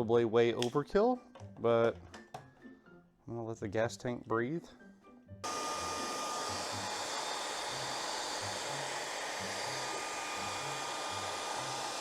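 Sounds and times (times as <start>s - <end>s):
hot-air blower running: 5.4s - 12.0s.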